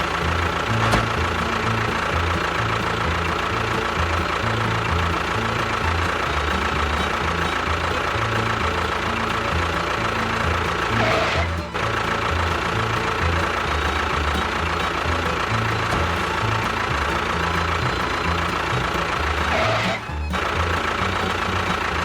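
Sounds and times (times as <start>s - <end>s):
background music with bass line: 0.0s - 22.0s
small motor whining: 0.0s - 22.0s.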